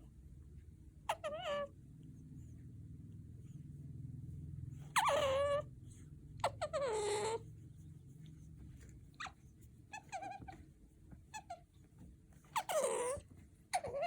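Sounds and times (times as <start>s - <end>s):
otter squeaking: 12.4s - 14.0s.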